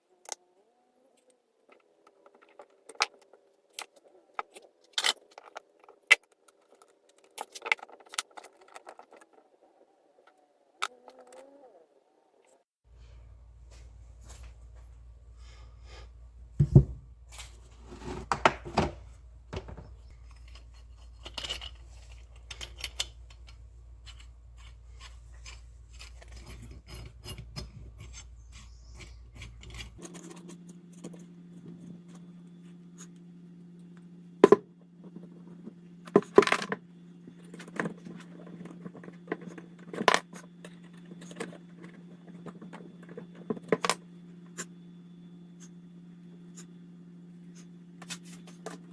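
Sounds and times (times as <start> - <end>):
low electrical hum: 12.0 - 48.9
metal tools clinking and scraping: 19.6 - 30.5.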